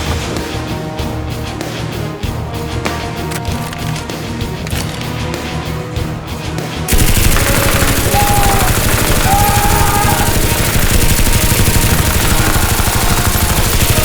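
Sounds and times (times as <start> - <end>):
background music: 0.0 - 14.0
rapid machine-gun fire: 6.9 - 14.0.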